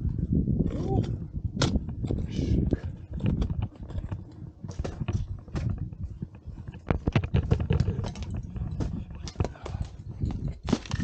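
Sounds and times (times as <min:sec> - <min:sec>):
low rumble: 0:00.0 - 0:11.0.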